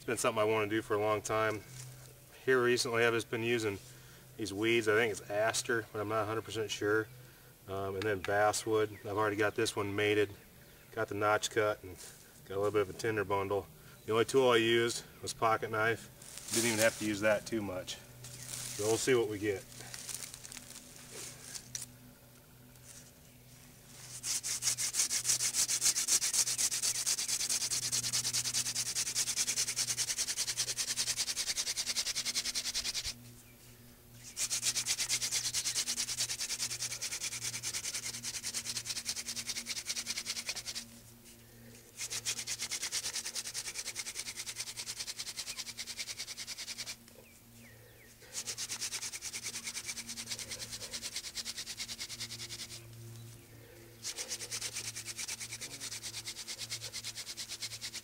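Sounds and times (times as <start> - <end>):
wooden spindle rubbing on board: 24.1 - 33.2, 34.3 - 40.8, 42.0 - 47.0, 48.4 - 52.8, 54.0 - 58.0.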